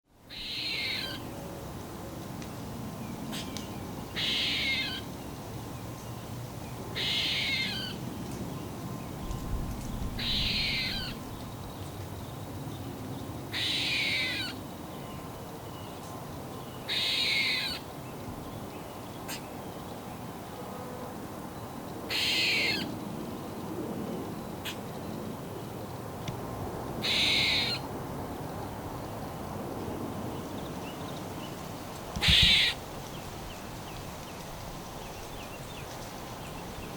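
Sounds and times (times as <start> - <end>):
squirrel squeaking: 0.3 - 1.2, 4.2 - 5.0, 7.0 - 8.0, 10.2 - 11.2, 16.9 - 17.8, 27.0 - 27.8, 32.2 - 32.8.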